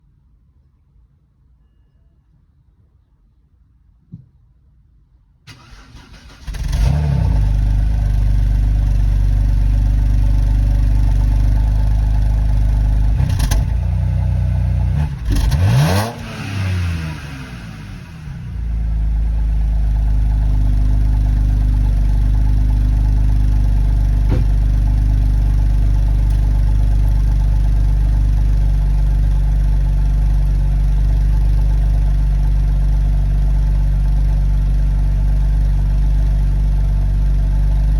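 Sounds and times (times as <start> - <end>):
engine revving: 5.5 - 9.4, 10.2 - 13.9, 14.8 - 18.7
car engine cranking and idling: 5.5 - 37.9.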